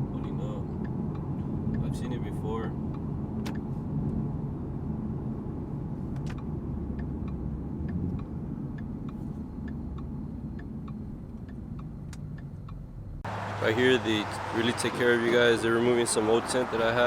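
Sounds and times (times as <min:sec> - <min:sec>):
car engine rumbling: 0:00.0 - 0:17.0
light regular ticking: 0:00.7 - 0:02.0, 0:06.3 - 0:13.2.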